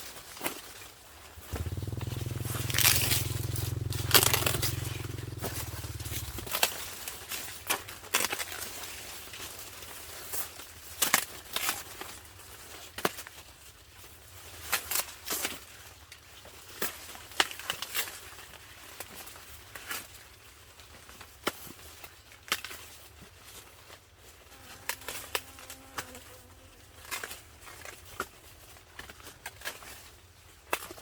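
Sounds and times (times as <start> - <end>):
corn husks rustling: 1.4 - 6.6
sharp snaps and crackles: 1.4 - 6.8.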